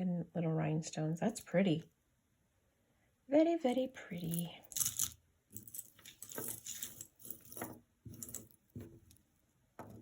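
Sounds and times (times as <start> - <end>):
jewelry clinking and rattling: 4.1 - 10.0.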